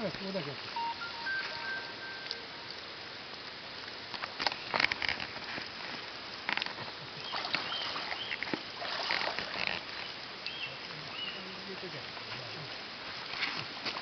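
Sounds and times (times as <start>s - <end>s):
short high chirps: 0.8s - 2.8s
fish splashing in water: 7.2s - 10.1s.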